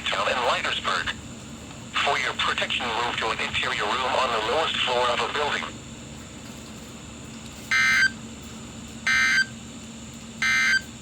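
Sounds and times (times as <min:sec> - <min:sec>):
faint radio hum: 0:00.0 - 0:06.9.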